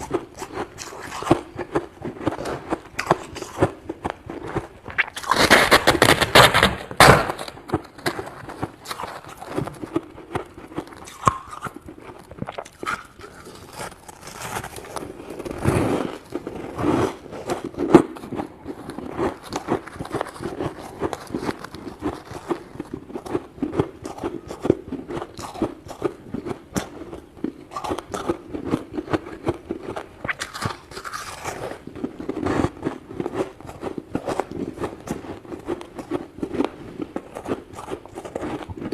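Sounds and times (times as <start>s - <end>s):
freezer frost being scraped: 5.0s - 6.9s, 12.8s - 22.6s.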